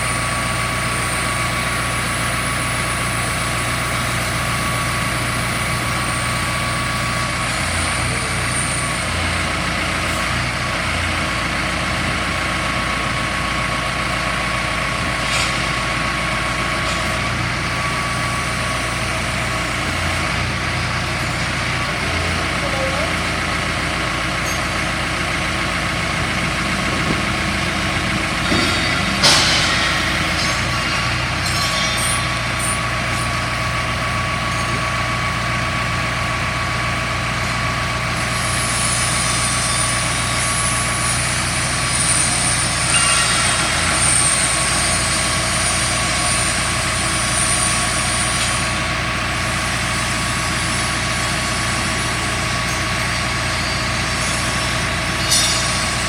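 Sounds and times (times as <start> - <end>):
drill rig machine hum: 0.0 - 56.0
metal clank: 15.0 - 18.7, 24.3 - 34.7, 42.5 - 46.2, 52.5 - 56.0.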